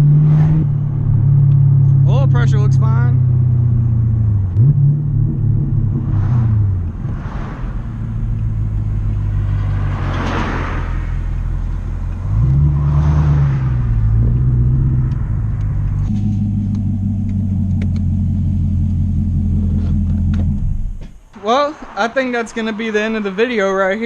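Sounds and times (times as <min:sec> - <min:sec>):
car engine running: 0:00.0 - 0:10.2, 0:13.4 - 0:21.6
rushing noise: 0:05.7 - 0:11.8, 0:20.5 - 0:24.0.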